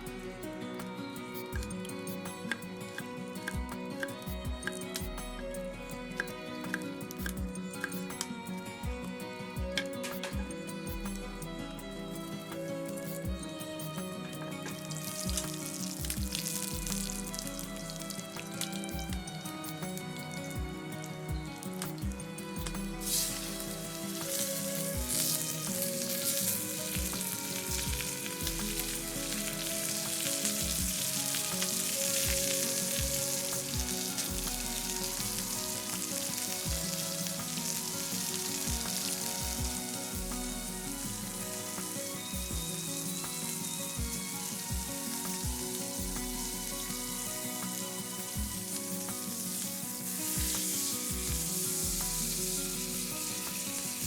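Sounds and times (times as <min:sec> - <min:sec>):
meat sizzling over fire: 0:12.1 - 0:54.0.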